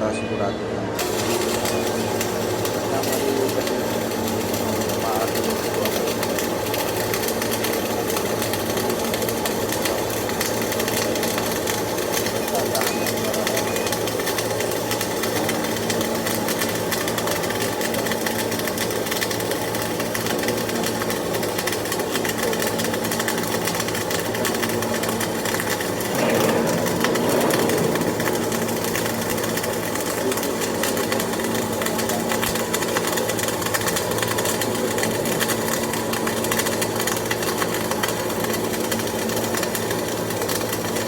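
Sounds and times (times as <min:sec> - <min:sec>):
welding arc crackling: 0:01.0 - 0:41.0.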